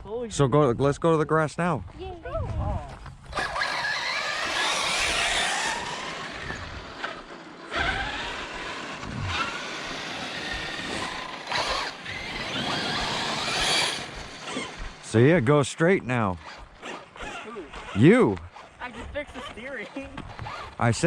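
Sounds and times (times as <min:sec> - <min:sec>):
rc truck motors whining: 0:03.3 - 0:15.2, 0:16.3 - 0:21.0.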